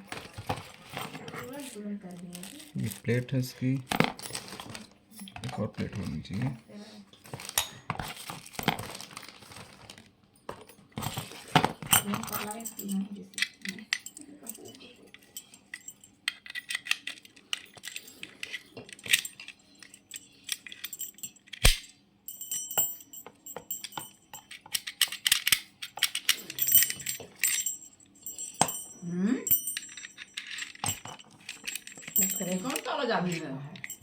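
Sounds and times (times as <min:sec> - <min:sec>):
metal lock parts clinking: 0:00.0 - 0:06.6, 0:07.2 - 0:34.0.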